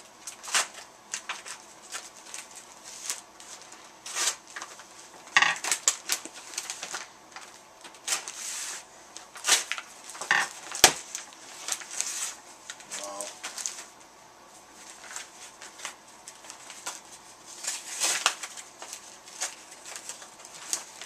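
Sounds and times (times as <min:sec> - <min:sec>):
packaging tearing: 0:00.2 - 0:04.8, 0:05.6 - 0:08.4, 0:09.3 - 0:12.4, 0:15.0 - 0:21.0
packaging rustling and crinkling: 0:00.2 - 0:14.0, 0:14.7 - 0:21.0.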